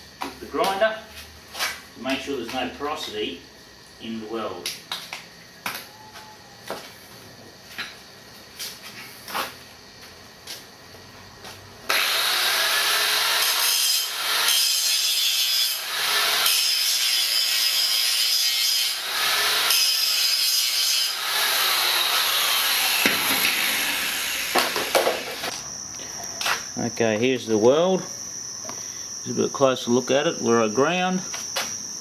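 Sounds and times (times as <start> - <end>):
grinder grinding steel: 11.9 - 25.7.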